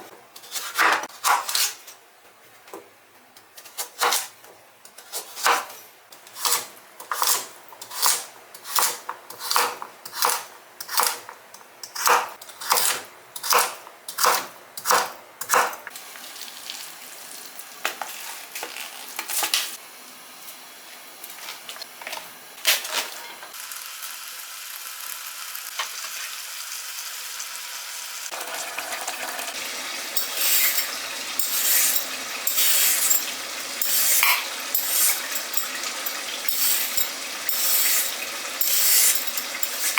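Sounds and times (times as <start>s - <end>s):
food frying in a pan: 15.6s - 39.9s
utensils clattering against pan: 30.2s - 39.9s.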